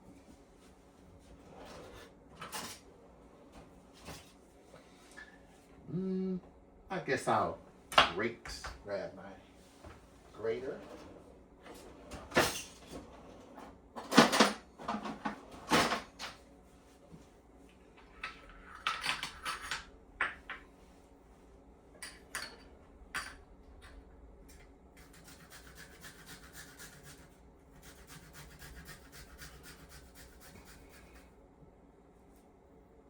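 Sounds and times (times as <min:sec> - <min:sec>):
food scraping on hand grater: 0:25.0 - 0:31.2.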